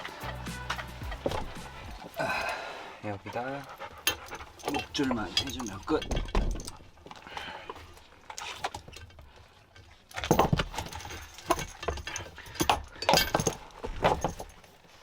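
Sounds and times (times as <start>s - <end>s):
leash clip clinking: 4.0s - 6.9s, 10.3s - 14.8s.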